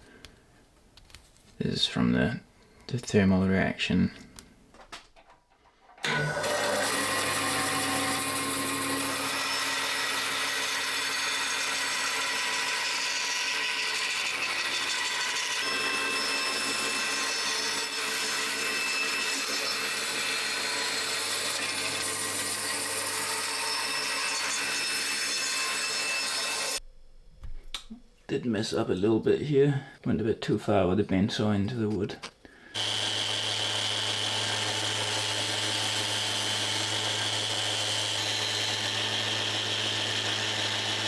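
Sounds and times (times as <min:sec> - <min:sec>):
bandsaw cutting: 0:06.0 - 0:26.8, 0:32.7 - 0:41.0.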